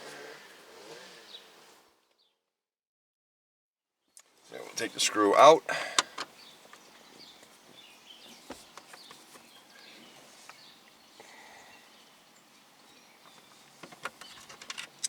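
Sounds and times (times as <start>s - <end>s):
faint bird chirps: 6.2s - 14.6s.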